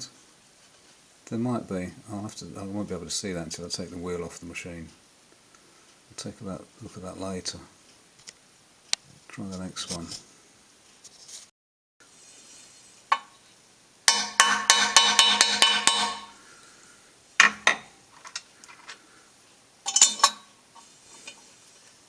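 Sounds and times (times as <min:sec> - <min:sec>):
ringing metal taps: 0:14.1 - 0:16.4
metal clinks: 0:19.8 - 0:20.5.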